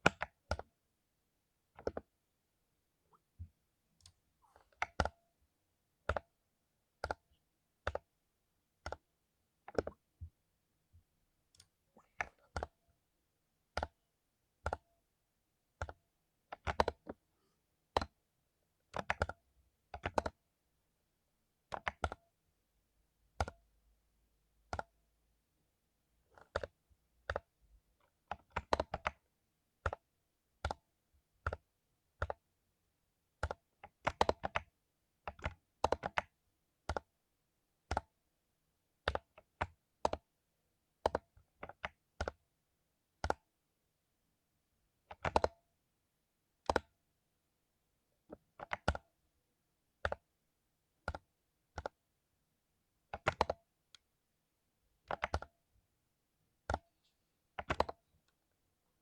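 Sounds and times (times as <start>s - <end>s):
mechanical keyboard typing: 15.7s - 17.2s, 18.9s - 20.4s, 21.7s - 22.3s, 28.3s - 29.2s, 33.4s - 34.7s, 35.3s - 37.1s, 39.1s - 40.3s, 45.1s - 45.6s, 48.3s - 49.0s, 53.1s - 53.7s, 55.0s - 55.5s, 57.6s - 58.4s.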